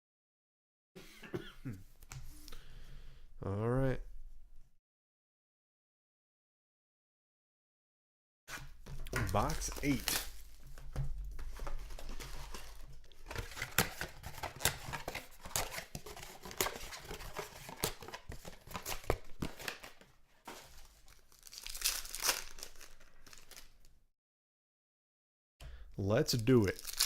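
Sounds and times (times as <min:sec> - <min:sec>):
plastic wrapping tearing and crinkling: 0:09.0 - 0:10.8, 0:11.6 - 0:23.9, 0:26.6 - 0:27.0.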